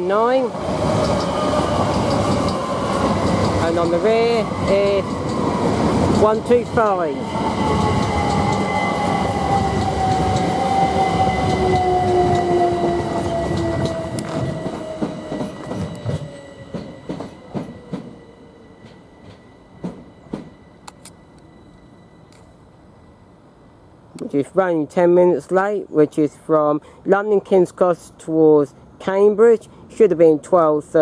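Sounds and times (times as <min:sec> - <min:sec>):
train wheels rumbling: 0:00.0 - 0:21.7
wheels clicking over rail joints: 0:00.9 - 0:07.1
train motor whine: 0:07.3 - 0:17.8.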